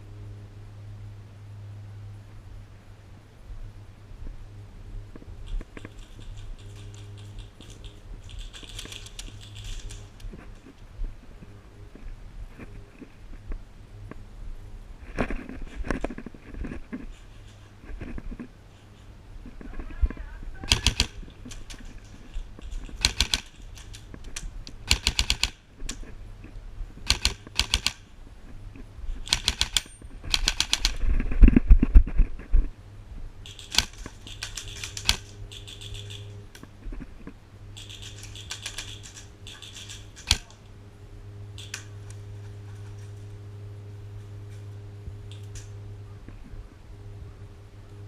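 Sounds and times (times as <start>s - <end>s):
steady low hum: 0.0s - 48.0s
airsoft guns firing bursts: 20.6s - 21.8s, 22.7s - 24.0s, 24.8s - 25.6s, 27.0s - 28.1s, 29.2s - 31.0s, 33.5s - 36.4s, 37.8s - 40.6s.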